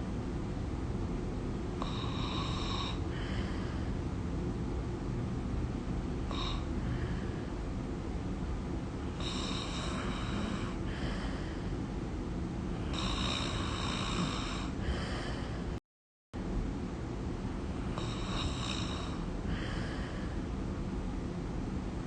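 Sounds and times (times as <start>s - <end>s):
steady low rumble: 0.0s - 15.8s, 16.4s - 22.0s
person snoring: 1.8s - 3.9s, 6.3s - 7.5s, 9.1s - 11.6s, 12.8s - 15.7s, 17.9s - 20.4s.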